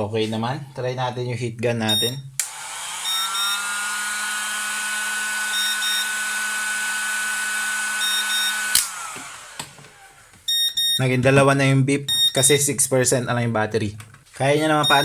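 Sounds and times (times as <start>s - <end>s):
short double alarm beeps: 1.9s - 2.3s, 3.1s - 3.6s, 5.6s - 6.1s, 8.0s - 8.6s, 10.5s - 11.0s, 12.1s - 12.5s
heat gun switch click: 2.4s - 3.4s, 8.7s - 9.8s
heat gun fan whine: 2.4s - 10.6s.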